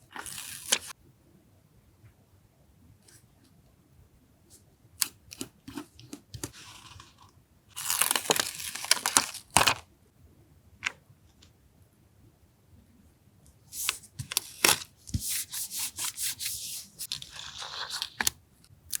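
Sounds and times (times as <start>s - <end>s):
paper rustling: 0.1s - 0.9s, 13.7s - 18.3s
paper tearing and crinkling: 0.2s - 0.9s, 7.8s - 9.8s, 16.6s - 18.3s.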